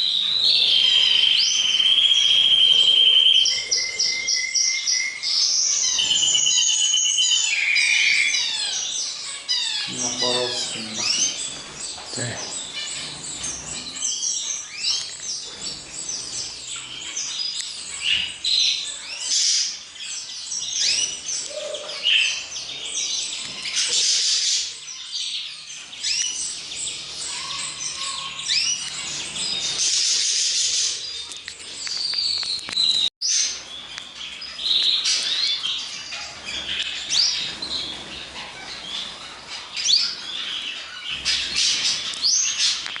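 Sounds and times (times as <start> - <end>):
caged birds chirping: 0.0 - 43.0.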